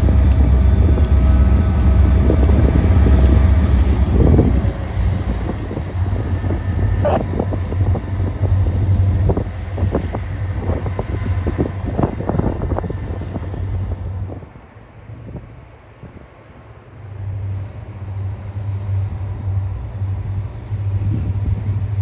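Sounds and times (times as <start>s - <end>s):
high-pitched squeal: 0.0s - 14.5s
freight train rumbling past: 0.0s - 22.0s.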